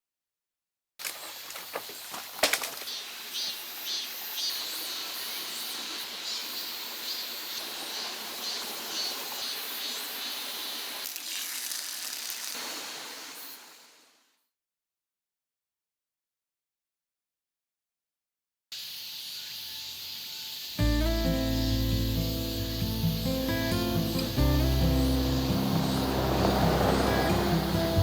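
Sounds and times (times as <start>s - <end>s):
stream rushing: 1.2s - 13.8s, 22.5s - 28.0s.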